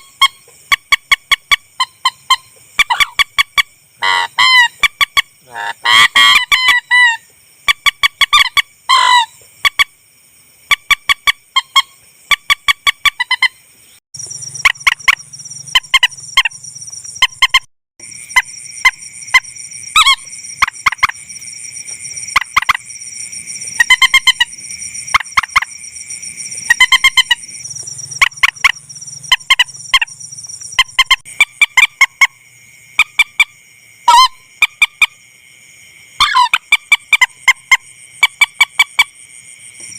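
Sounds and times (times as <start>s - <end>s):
honking bird calls: 0.0s - 7.2s, 8.1s - 9.3s, 36.2s - 37.3s
rapid clicking bird calls: 0.0s - 9.9s, 14.2s - 17.7s, 23.5s - 25.8s, 26.4s - 32.3s.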